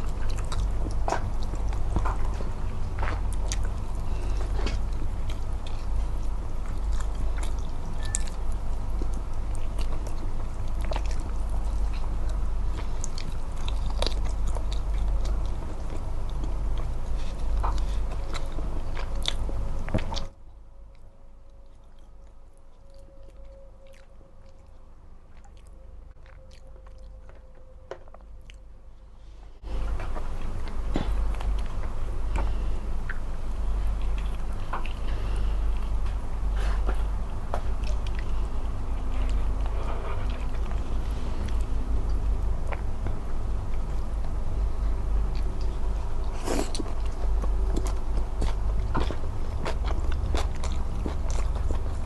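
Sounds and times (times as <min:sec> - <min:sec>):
close chewing and biting: 0:00.0 - 0:28.7, 0:29.7 - 0:52.0
steady low hum: 0:00.0 - 0:52.0.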